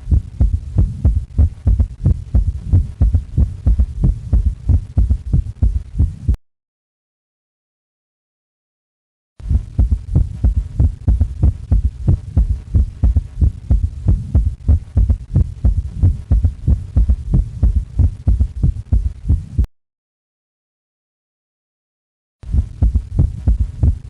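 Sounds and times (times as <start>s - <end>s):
heartbeat galloping rhythm: 0.0s - 6.4s, 9.4s - 19.7s, 22.4s - 24.0s.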